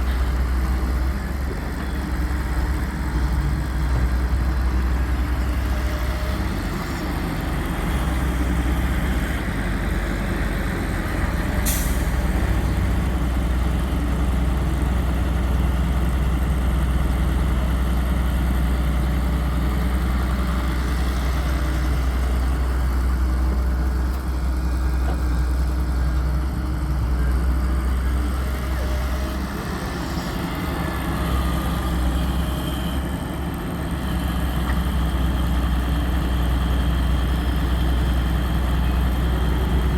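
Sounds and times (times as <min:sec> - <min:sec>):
heavy diesel engines rumbling: 0:00.0 - 0:39.9.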